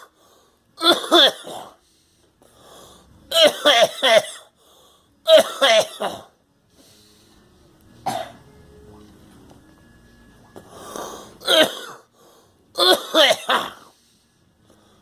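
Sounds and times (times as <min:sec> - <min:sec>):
person coughing: 0:00.8 - 0:01.8, 0:03.3 - 0:04.5, 0:05.3 - 0:06.4, 0:08.0 - 0:08.4, 0:11.4 - 0:12.1, 0:12.8 - 0:13.9.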